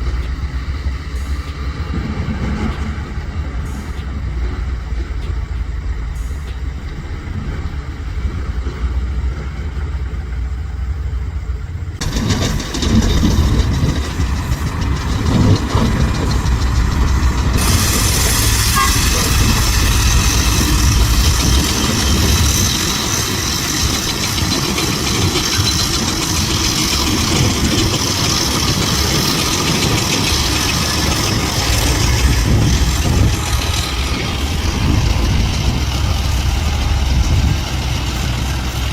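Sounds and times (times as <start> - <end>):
heavy machinery engine rumble: 0.0 - 38.9
high hiss: 12.0 - 38.9.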